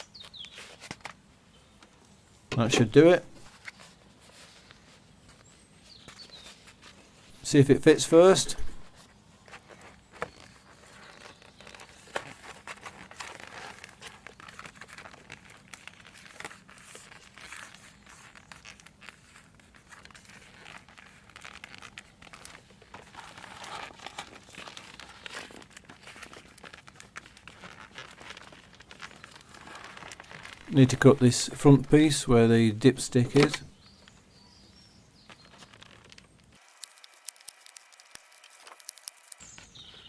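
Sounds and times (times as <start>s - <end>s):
foam rustling and crinkling: 3.4s - 7.3s, 9.0s - 30.8s, 35.1s - 40.0s.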